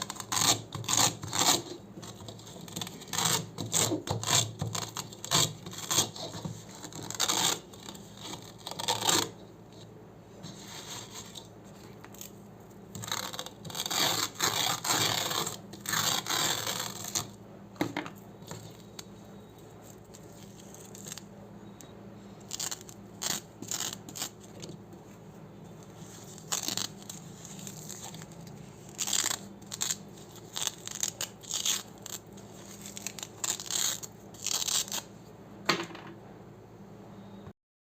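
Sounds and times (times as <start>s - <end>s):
velcro ripping: 0.0s - 9.4s, 13.0s - 17.4s, 22.5s - 24.6s, 26.2s - 35.1s.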